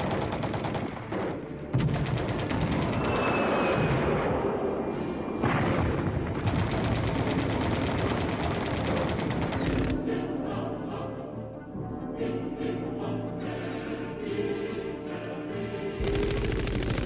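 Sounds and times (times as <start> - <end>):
rapid automatic gunfire: 0.0 - 3.8, 6.3 - 10.0, 16.0 - 17.0
choral music: 0.0 - 7.4, 8.1 - 17.0.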